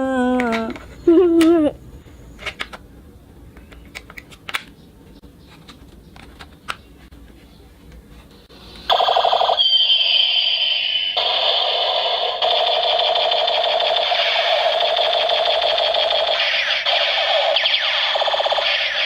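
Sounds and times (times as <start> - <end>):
toy machine gun sound effect: 8.9 - 19.0.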